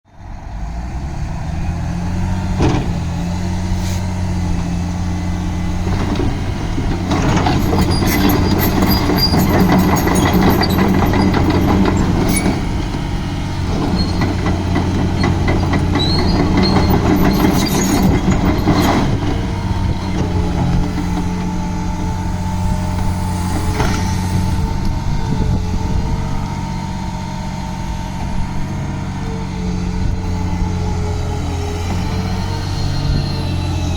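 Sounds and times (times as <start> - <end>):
excavator diesel engine running: 0.1 - 33.9
high squeaks: 7.5 - 12.8, 13.7 - 19.2.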